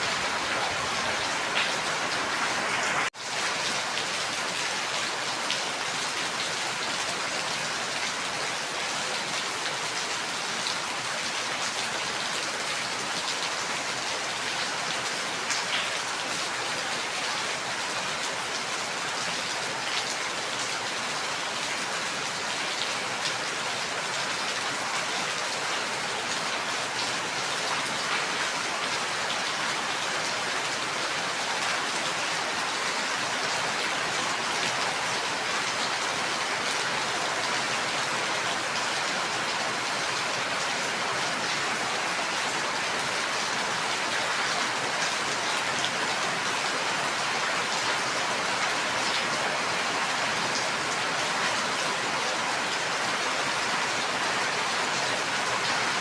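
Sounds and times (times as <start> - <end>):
steady rain hiss: 0.0 - 6.4.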